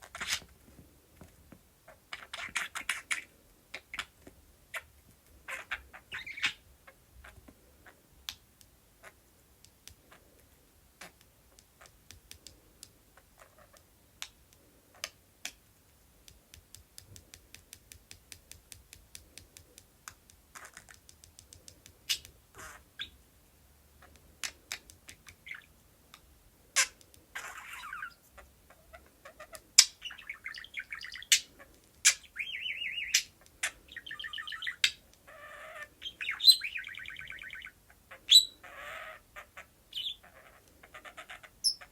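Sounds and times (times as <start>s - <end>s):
budgie chirping chatter: 5.5s - 6.6s, 26.8s - 41.9s.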